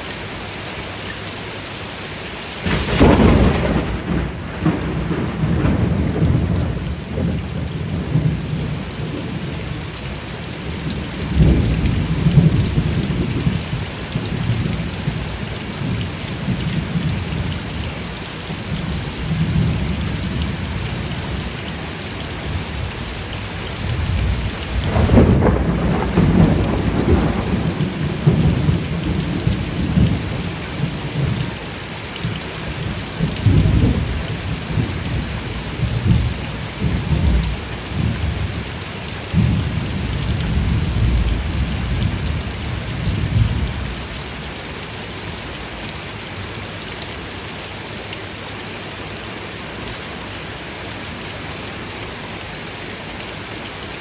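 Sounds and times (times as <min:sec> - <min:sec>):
steady rain: 0:00.0 - 0:54.0
rolling thunder: 0:02.6 - 0:09.5, 0:10.8 - 0:13.7, 0:23.8 - 0:31.4, 0:39.3 - 0:44.0.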